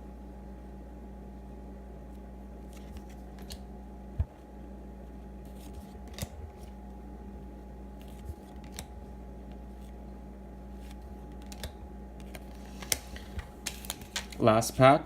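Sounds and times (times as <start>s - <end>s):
steady low hum: 0.0s - 15.0s
trading cards clicking and flicking: 5.5s - 6.7s, 8.0s - 8.9s, 10.8s - 14.8s.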